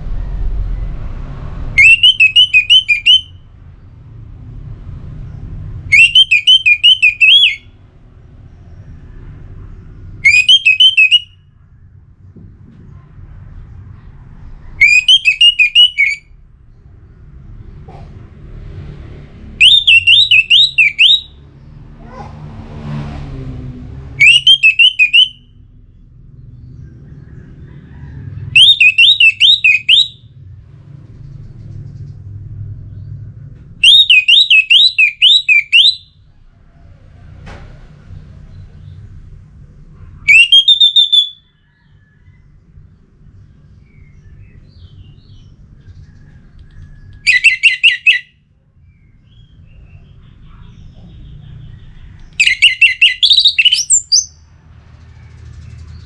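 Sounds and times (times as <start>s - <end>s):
low rumble: 0.0s - 2.0s
thrush whistling: 1.7s - 3.5s, 5.9s - 7.8s, 10.2s - 11.6s, 14.7s - 16.4s, 19.5s - 21.4s, 24.2s - 25.6s, 28.0s - 30.3s, 33.8s - 36.2s, 40.0s - 42.2s, 46.9s - 48.3s, 52.3s - 54.5s.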